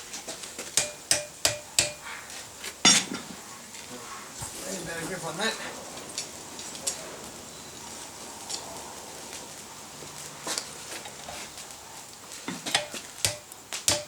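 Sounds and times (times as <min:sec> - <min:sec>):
steady hiss: 0:00.0 - 0:14.0.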